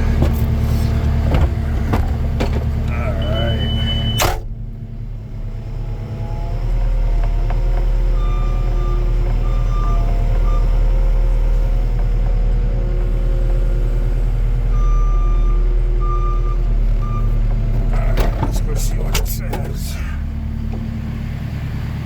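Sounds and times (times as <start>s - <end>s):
forklift engine rumbling: 0.0s - 22.0s
reversing alarm beeps: 3.1s - 4.4s, 14.7s - 17.4s.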